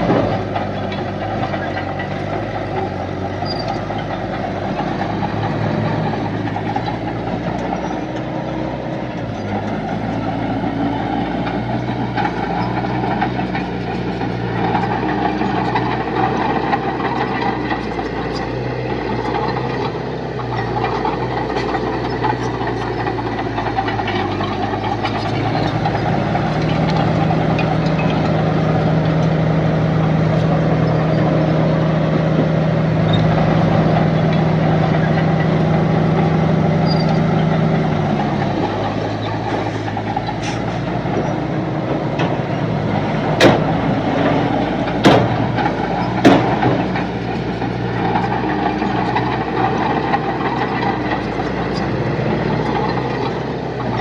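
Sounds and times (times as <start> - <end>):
heavy diesel engine running: 0.0 - 54.0
knocks and clanks: 0.0 - 54.0.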